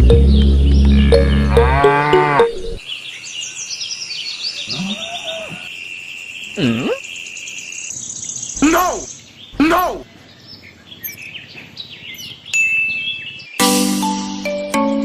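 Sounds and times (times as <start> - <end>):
background music with beat: 0.0 - 1.6
birds chirping: 0.0 - 13.7
cow mooing: 1.4 - 2.6
crickets chirping: 2.9 - 9.6.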